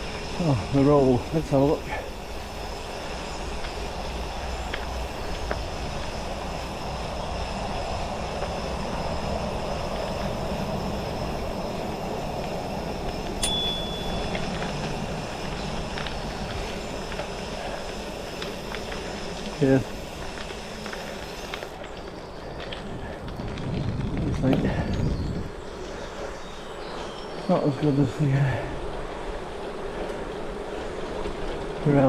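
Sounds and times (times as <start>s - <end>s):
wind noise: 0.0s - 27.0s
bike tyres rolling on gravel: 0.0s - 32.0s
short high tone: 13.4s - 14.4s.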